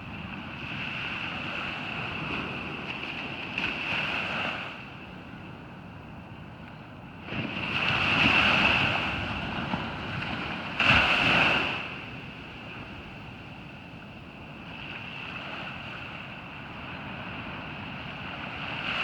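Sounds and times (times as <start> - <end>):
ocean surf washing: 7.2 - 19.0
waves breaking: 7.2 - 19.0.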